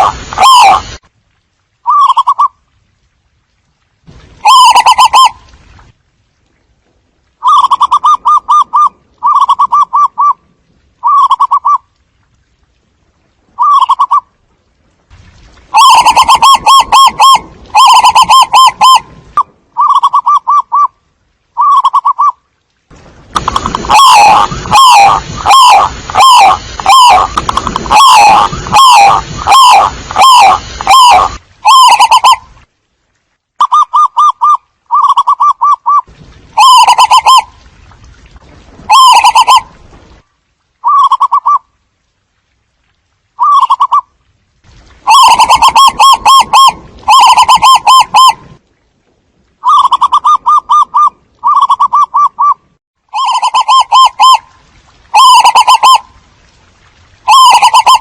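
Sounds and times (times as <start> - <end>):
doves cooing: 23.8 - 32.4.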